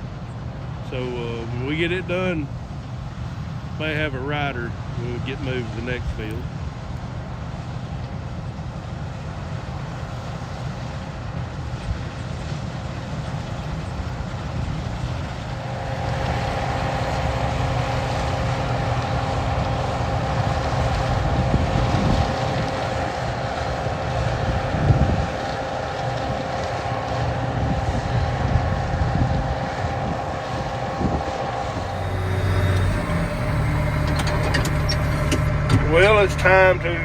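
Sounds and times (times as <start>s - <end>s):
steady whine: 3.6s - 6.5s, 14.4s - 37.0s
diesel engine running: 15.2s - 37.0s.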